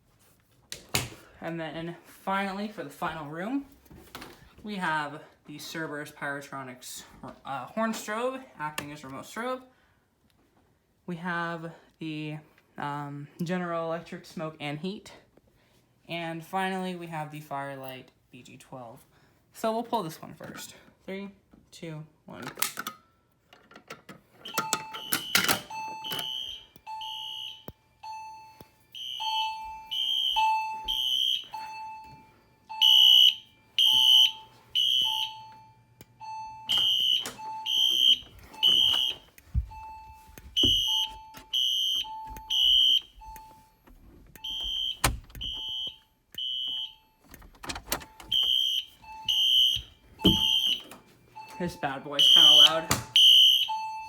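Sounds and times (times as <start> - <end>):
fire alarm horn blasts: 24.4 - 43.8, 44.4 - 47.2, 48.0 - 54.0
lower repeating alarm tone: 24.5 - 54.0.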